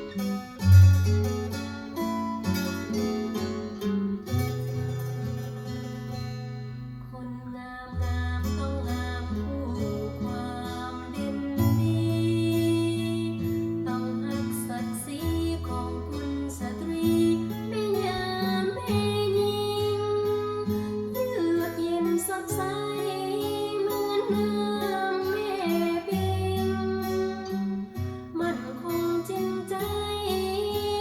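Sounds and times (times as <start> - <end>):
acoustic guitar and bass chords: 0.0 - 31.0
woman singing: 7.0 - 31.0.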